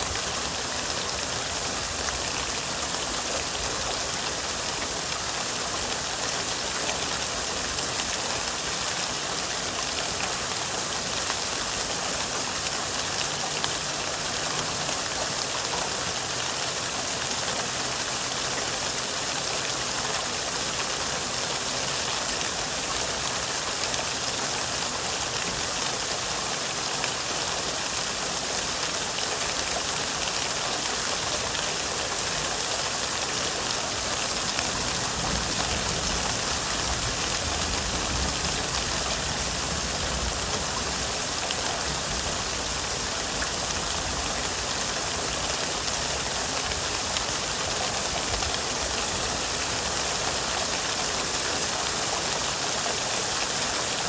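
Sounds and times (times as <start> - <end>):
rain falling: 0.0 - 54.0.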